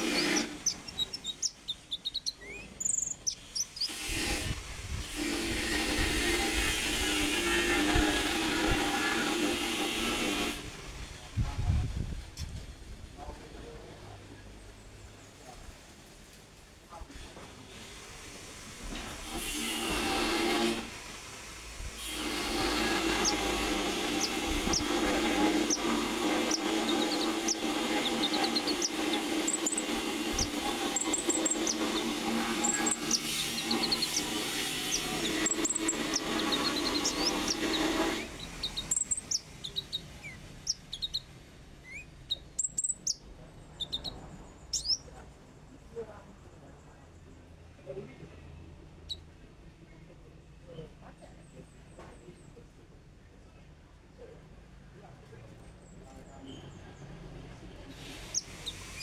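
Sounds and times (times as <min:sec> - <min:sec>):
songbird chirping: 0:00.0 - 0:04.0, 0:22.2 - 0:45.2.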